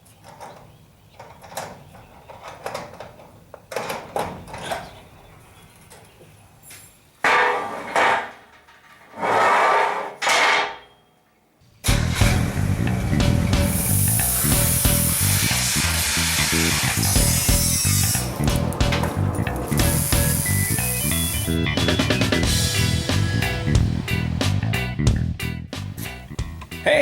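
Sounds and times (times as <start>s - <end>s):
knocks and clanks on metal: 7.2s - 9.5s, 10.2s - 10.8s, 17.0s - 20.5s
loud hiss bursts: 11.9s - 21.6s.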